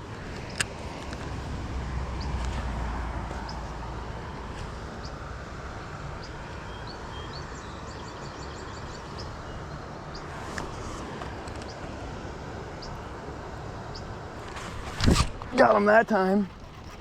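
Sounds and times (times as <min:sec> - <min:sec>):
small birds chirping: 0:06.1 - 0:11.9, 0:12.7 - 0:14.2.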